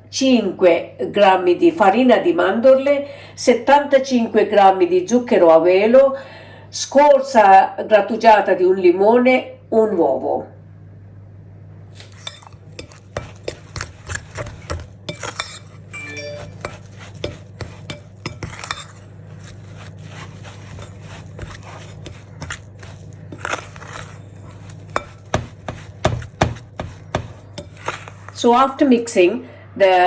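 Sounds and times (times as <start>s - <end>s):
utensil scraping mixing bowl: 12.0s - 28.8s.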